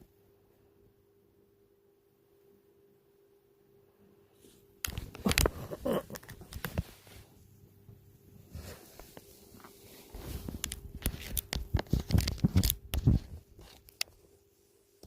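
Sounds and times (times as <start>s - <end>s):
rustling and scraping: 4.4s - 7.4s, 8.4s - 15.0s.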